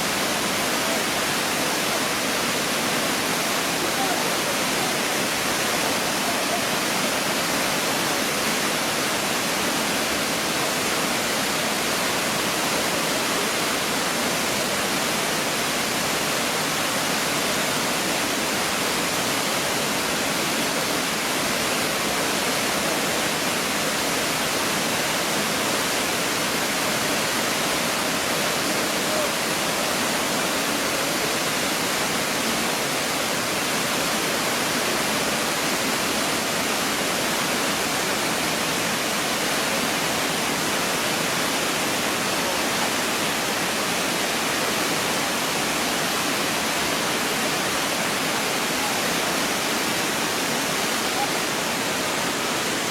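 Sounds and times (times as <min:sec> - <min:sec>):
waterfall rushing: 0:00.0 - 0:52.9.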